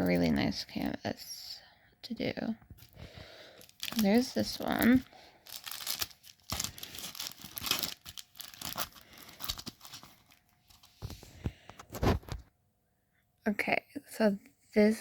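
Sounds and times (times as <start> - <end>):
plastic packaging crinkling: 2.8 - 12.4.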